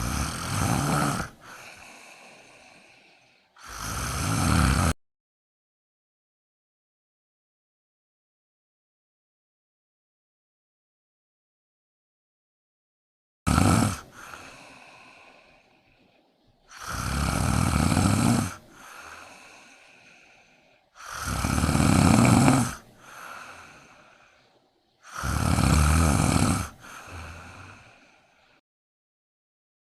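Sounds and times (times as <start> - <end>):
kitten snoring: 0.0 - 3.0, 3.6 - 5.0, 13.5 - 15.5, 16.7 - 20.3, 21.0 - 24.3, 25.0 - 28.0.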